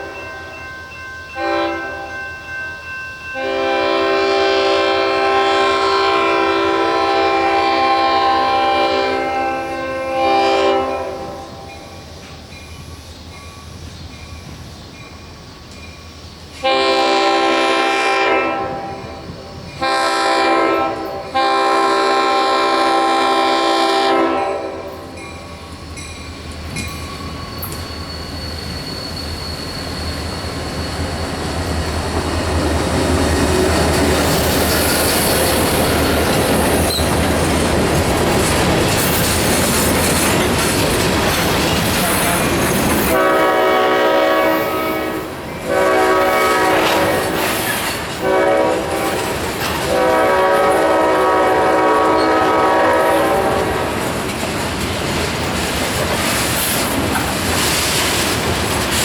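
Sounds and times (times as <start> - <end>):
freight train rumbling past: 0.0 - 59.0
locomotive horn blasts: 1.4 - 2.2, 3.4 - 11.7, 16.6 - 25.2, 42.0 - 47.5, 48.2 - 49.2, 49.8 - 53.9.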